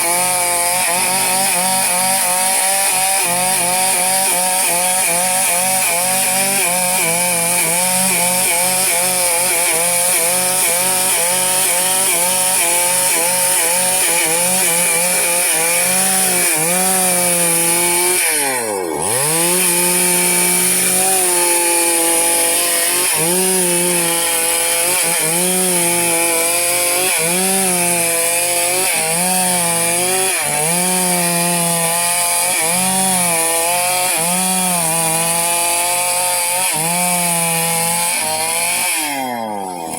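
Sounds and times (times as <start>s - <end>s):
chainsaw cutting timber: 0.0s - 39.9s.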